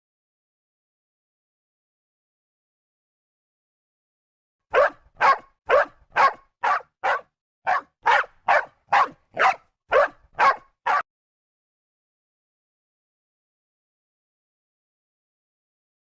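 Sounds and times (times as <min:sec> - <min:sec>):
dog barking: 0:04.7 - 0:11.1.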